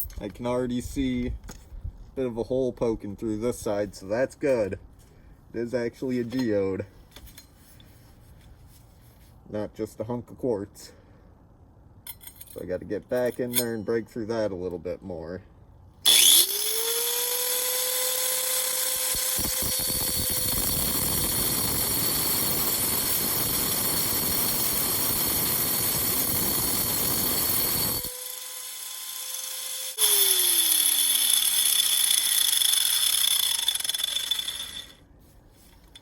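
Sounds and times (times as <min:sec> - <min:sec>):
angle grinder cutting stone: 0:16.0 - 0:35.0
grinder wheel spinning free: 0:16.1 - 0:35.0.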